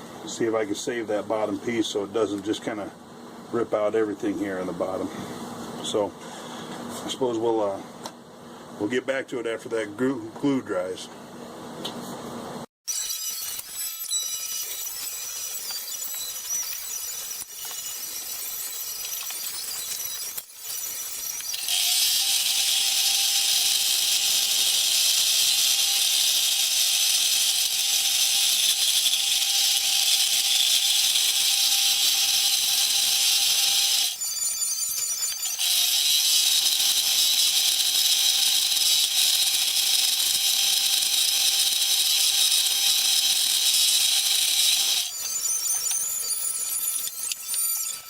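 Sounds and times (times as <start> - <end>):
power tool whining: 12.9 - 48.0.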